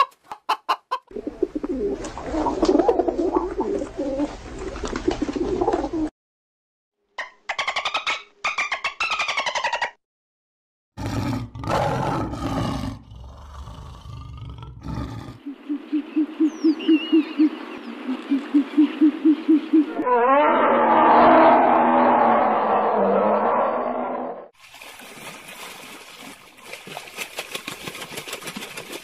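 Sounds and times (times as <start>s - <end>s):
rapid pulsing animal calls: 15.4s - 20.0s
low rough animal call: 19.9s - 24.5s
loud noisy animal call: 20.0s - 23.9s.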